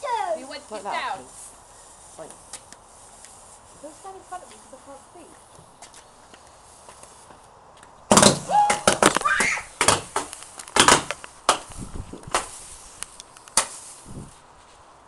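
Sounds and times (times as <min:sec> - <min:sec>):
sharp irregular knocks and clatters: 0:08.1 - 0:11.7.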